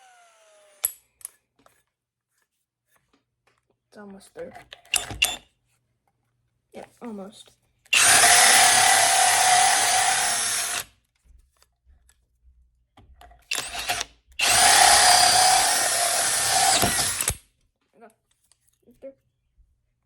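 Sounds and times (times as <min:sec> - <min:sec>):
drill cutting through wood: 0:00.0 - 0:00.9, 0:07.9 - 0:10.9, 0:13.5 - 0:17.4.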